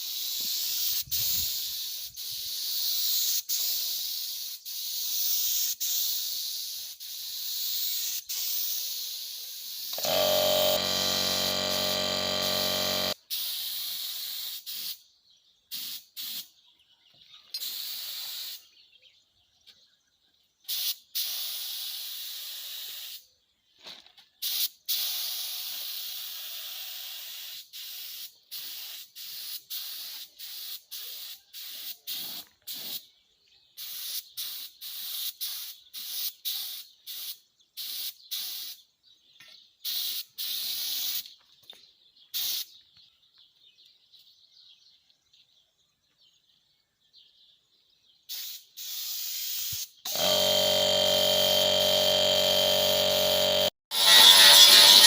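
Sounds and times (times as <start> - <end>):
welding arc sizzling: 10.0 - 13.2, 50.1 - 55.0.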